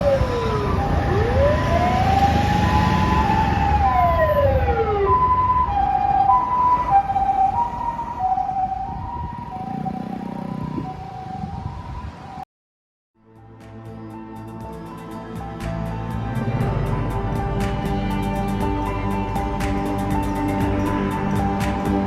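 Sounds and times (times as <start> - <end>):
two-tone hi-lo siren: 0.0 - 12.4
vehicle rumble: 0.0 - 12.4, 15.2 - 22.0
wailing siren: 0.0 - 12.4.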